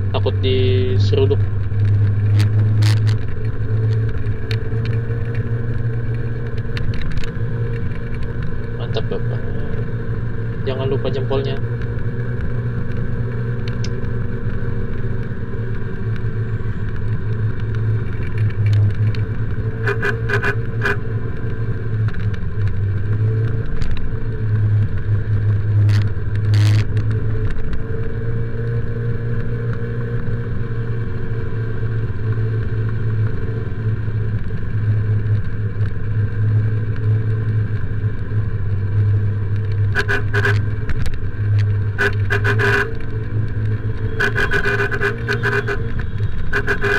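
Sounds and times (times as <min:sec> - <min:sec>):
motorcycle engine revving: 0:00.0 - 0:46.9
horn beeps: 0:19.8 - 0:21.1, 0:39.9 - 0:40.8, 0:41.9 - 0:43.2, 0:43.9 - 0:46.9.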